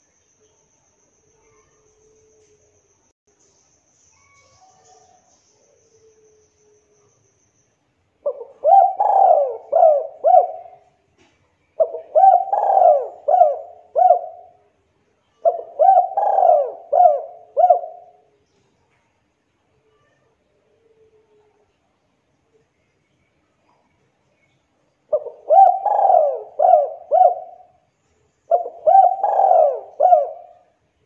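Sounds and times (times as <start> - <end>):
dove cooing: 8.2 - 10.9, 11.8 - 14.6, 15.4 - 18.2, 25.1 - 27.7, 28.5 - 30.7.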